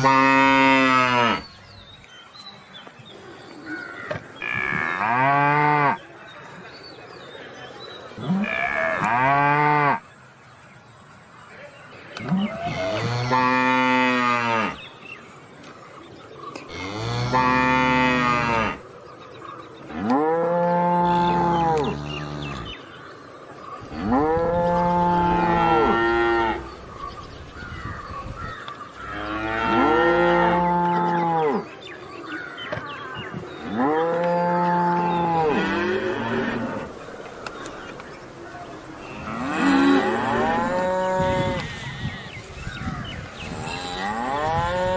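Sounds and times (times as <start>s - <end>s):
cow mooing: 0.0s - 1.5s, 12.3s - 14.8s, 16.7s - 18.8s, 23.9s - 26.7s, 29.1s - 31.6s, 33.7s - 36.9s, 39.1s - 42.3s.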